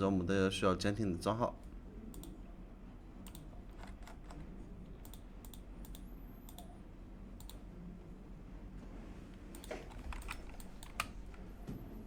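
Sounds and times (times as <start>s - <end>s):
faint low hum: 0.0s - 12.0s
computer clicks: 2.1s - 2.4s, 3.2s - 4.4s, 5.0s - 6.8s, 7.4s - 7.6s, 9.5s - 11.4s.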